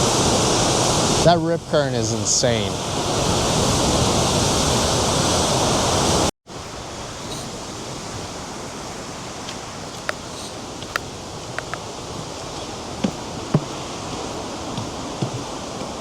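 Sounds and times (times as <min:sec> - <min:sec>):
quiet outdoor hiss: 0:06.5 - 0:16.0
waves surging onto shore: 0:06.5 - 0:16.0
faint ticks: 0:09.4 - 0:13.7.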